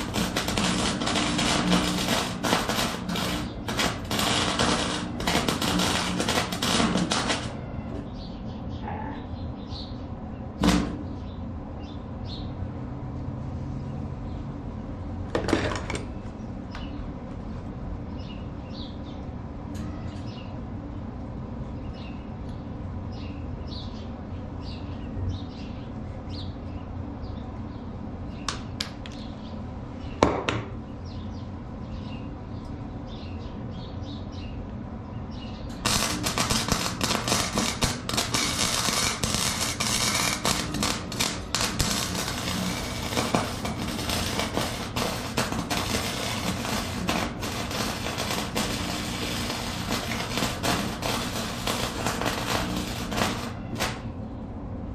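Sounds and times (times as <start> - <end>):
welding arc crackling: 0.0 - 7.6, 10.6 - 11.1, 35.7 - 54.2
low hum: 0.0 - 12.8, 30.8 - 54.9.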